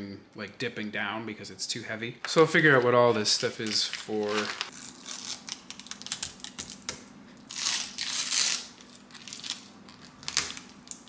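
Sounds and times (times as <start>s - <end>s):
plastic packaging crinkling: 2.5s - 11.0s.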